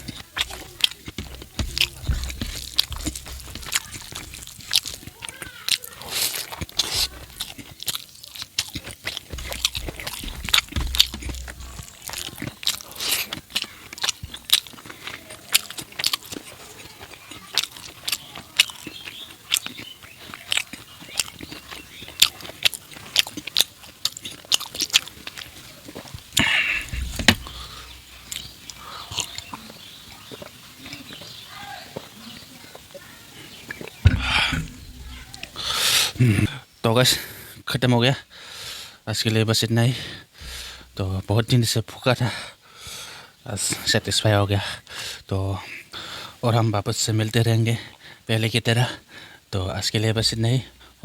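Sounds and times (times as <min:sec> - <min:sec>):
person chewing and lip-smacking: 0:00.0 - 0:31.3, 0:33.7 - 0:36.5.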